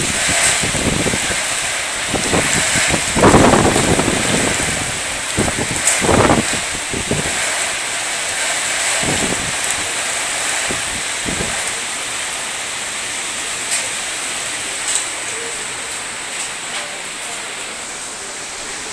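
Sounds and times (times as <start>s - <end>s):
wind gusts buffeting microphone: 0.0s - 12.3s
storm wind and heavy rain: 0.0s - 18.9s.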